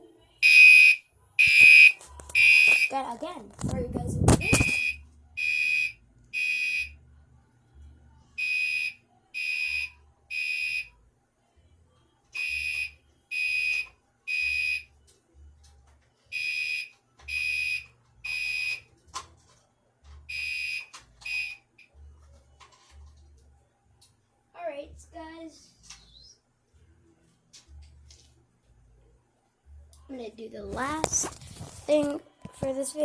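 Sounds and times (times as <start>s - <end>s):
fire alarm horn beeping: 0.4s - 3.0s, 4.4s - 7.0s, 8.4s - 10.9s, 12.4s - 14.9s, 16.3s - 18.8s, 20.3s - 21.6s.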